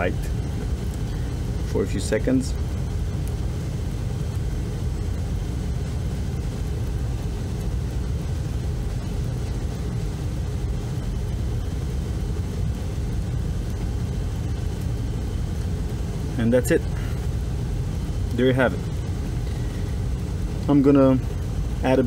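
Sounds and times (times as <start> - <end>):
low background rumble: 0.0 - 22.0.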